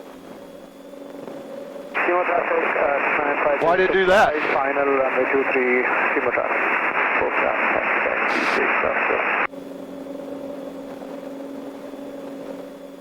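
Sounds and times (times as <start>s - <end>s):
light plane engine droning: 0.0s - 13.0s
radio hiss in headset: 1.2s - 9.5s.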